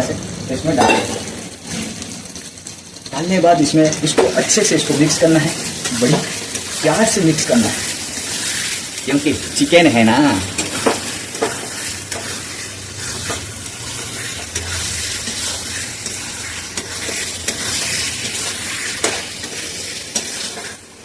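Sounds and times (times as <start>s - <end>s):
chicken sizzling in pan: 0.0s - 21.0s
ladle scraping and knocking pan: 0.8s - 1.6s.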